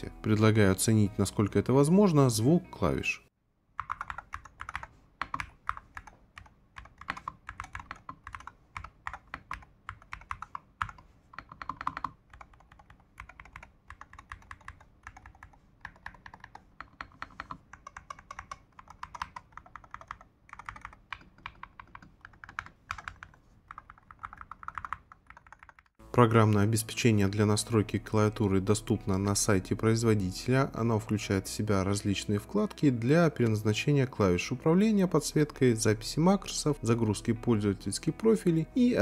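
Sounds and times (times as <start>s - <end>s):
keyboard keys clacking: 3.8s - 25.9s.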